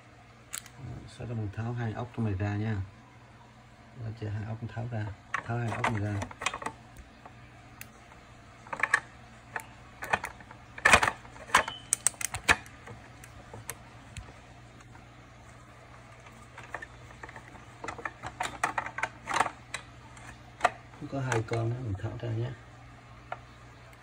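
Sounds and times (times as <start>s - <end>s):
steady low hum: 0.0s - 24.0s
screwdriver clicks and taps: 11.6s - 14.3s.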